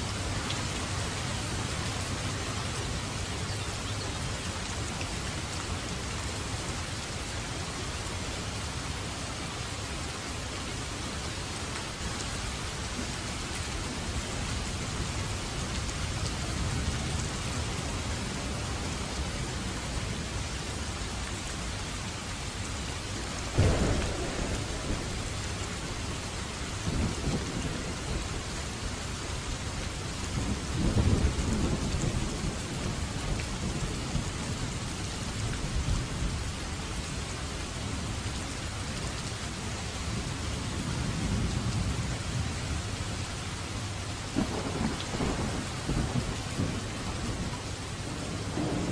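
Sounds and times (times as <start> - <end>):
heavy rain: 0.0 - 48.9
thunder crack and rumbles: 23.5 - 36.4, 44.4 - 48.9.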